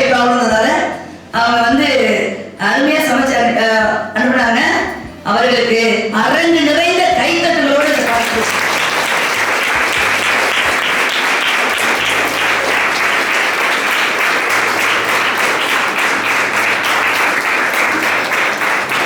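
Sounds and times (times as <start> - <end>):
audience applauding: 7.8 - 19.0.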